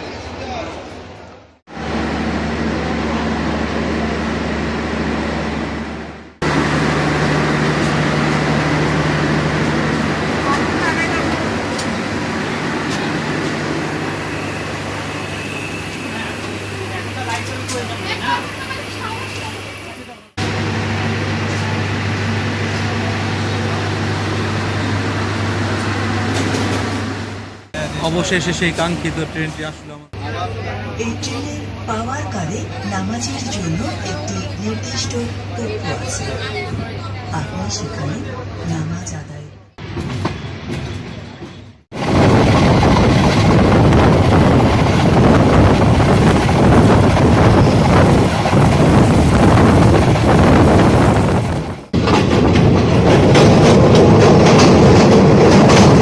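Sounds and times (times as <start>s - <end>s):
moving train rushing: 0.0s - 29.9s, 39.8s - 56.0s
wind buffeting microphone: 41.9s - 56.0s.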